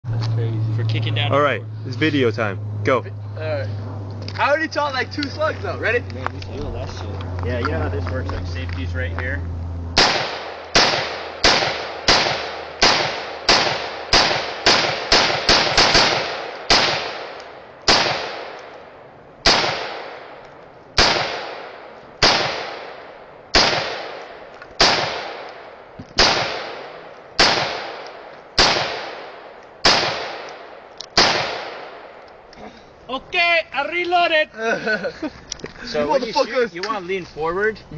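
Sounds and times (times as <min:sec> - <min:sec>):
gunshots with echo: 0:10.0 - 0:18.7, 0:19.4 - 0:20.4, 0:21.0 - 0:32.2.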